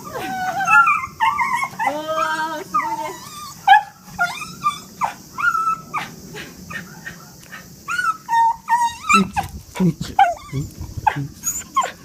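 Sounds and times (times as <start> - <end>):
dog whining and whimpering: 0.0 - 6.0, 7.9 - 9.5, 10.1 - 12.0.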